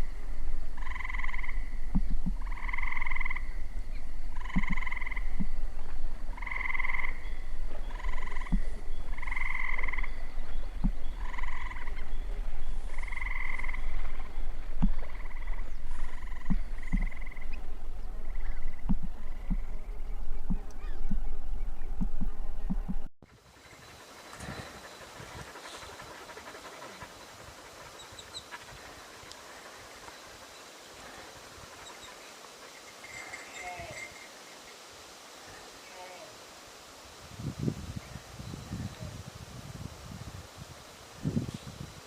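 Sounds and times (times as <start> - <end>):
steady low hum: 0.0 - 32.8
frog croaking: 0.7 - 12.3, 12.9 - 19.8.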